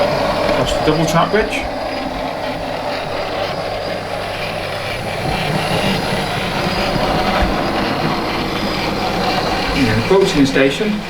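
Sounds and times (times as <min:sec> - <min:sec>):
model train running on track: 0:00.0 - 0:11.0.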